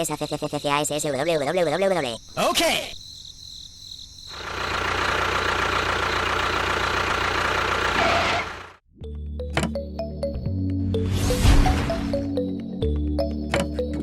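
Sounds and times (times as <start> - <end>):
music: 8.9 - 14.0.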